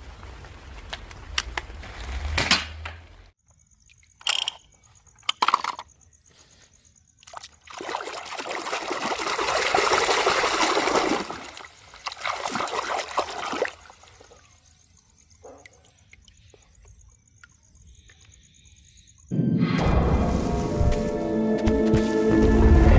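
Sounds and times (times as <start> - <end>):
water splashing over toy cars: 7.2 - 15.2.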